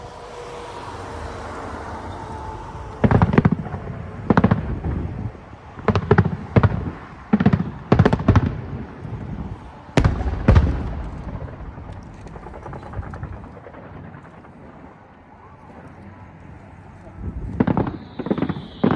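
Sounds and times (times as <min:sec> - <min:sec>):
faint fireworks crackling: 0:00.0 - 0:18.9
fireworks booming: 0:00.4 - 0:15.2, 0:17.3 - 0:18.9.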